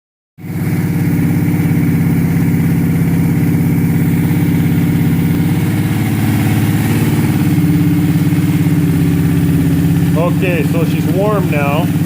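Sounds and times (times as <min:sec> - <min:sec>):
engine idling: 0:00.4 - 0:12.0.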